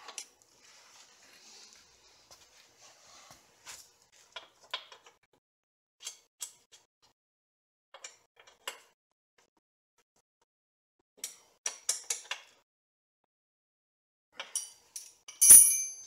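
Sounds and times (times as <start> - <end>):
metallic clinks: 14.5 - 16.0.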